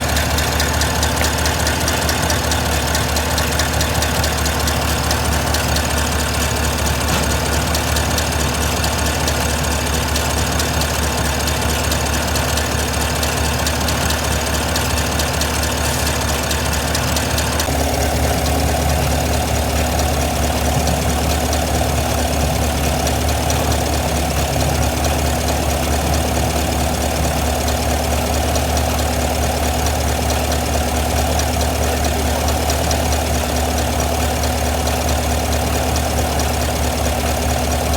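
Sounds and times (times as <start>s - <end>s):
car engine idling: 0.0s - 37.9s
rapid lifter ticking: 0.0s - 37.9s.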